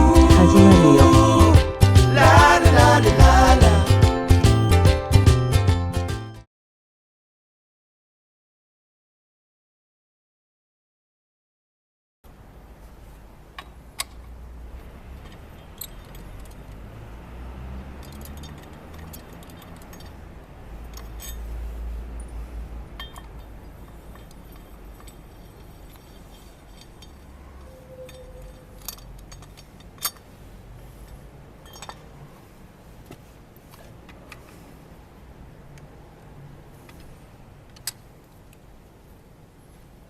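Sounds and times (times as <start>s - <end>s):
light metallic clinks: 15.2s - 16.8s, 17.9s - 20.2s, 22.2s - 27.3s, 31.6s - 32.1s.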